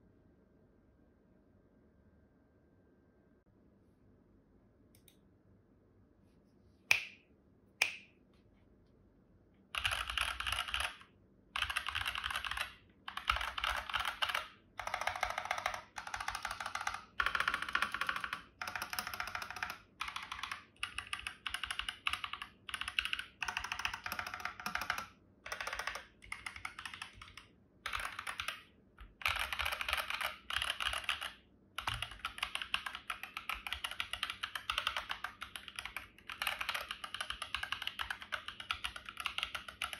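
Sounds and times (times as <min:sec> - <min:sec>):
fast typing on mechanical keyboard: 0:09.8 - 0:39.9.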